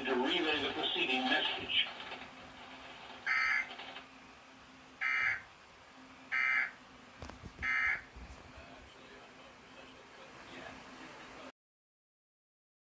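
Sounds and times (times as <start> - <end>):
digital signalling tone bursts: 5.0 - 5.4.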